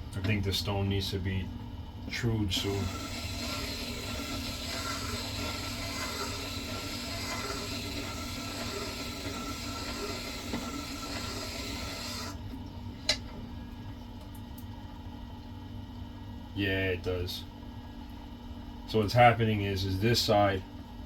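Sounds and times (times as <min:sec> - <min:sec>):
motor hum: 0:00.0 - 0:16.5
chisel grinding on wet stone: 0:03.0 - 0:12.2.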